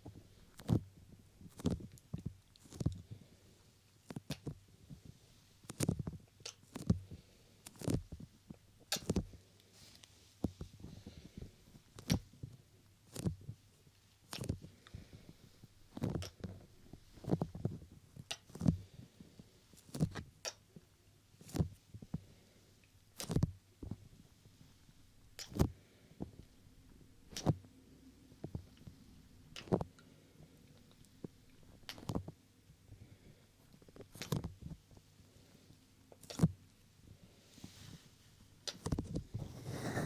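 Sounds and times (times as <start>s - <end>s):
hand brushing microphone: 39.3s - 40.0s.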